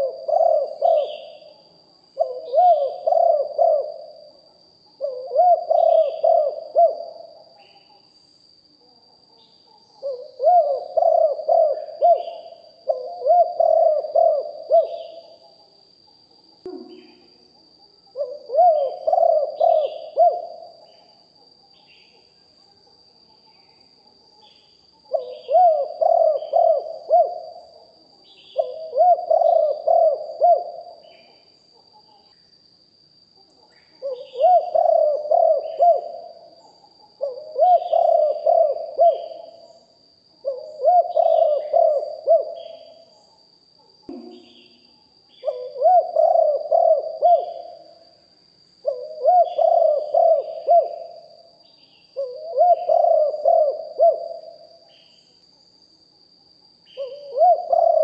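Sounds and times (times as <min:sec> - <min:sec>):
dove cooing: 0:00.0 - 0:08.0, 0:09.3 - 0:15.6, 0:16.7 - 0:17.4, 0:18.1 - 0:21.1, 0:25.1 - 0:32.3, 0:33.6 - 0:39.7, 0:40.4 - 0:43.1, 0:44.1 - 0:48.0, 0:48.8 - 0:51.5, 0:52.2 - 0:54.8, 0:57.0 - 0:58.0
faint high whine: 0:00.0 - 0:58.0
small birds chirping: 0:33.4 - 0:48.1.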